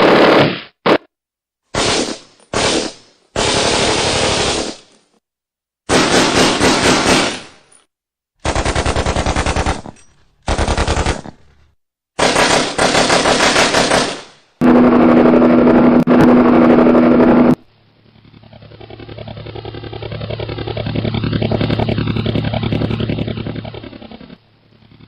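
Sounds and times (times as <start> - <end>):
machine humming with fast rattle: 14.6 - 25.0.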